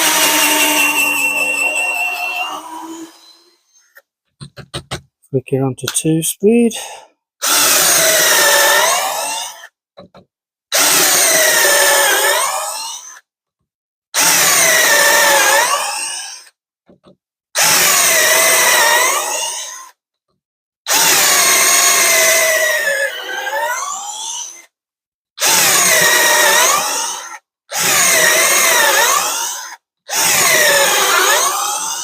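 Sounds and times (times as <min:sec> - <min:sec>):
cordless drill whining: 0:00.0 - 0:04.0, 0:07.4 - 0:09.7, 0:10.7 - 0:13.2, 0:14.2 - 0:16.4, 0:17.6 - 0:19.9, 0:20.9 - 0:23.4, 0:25.4 - 0:32.0.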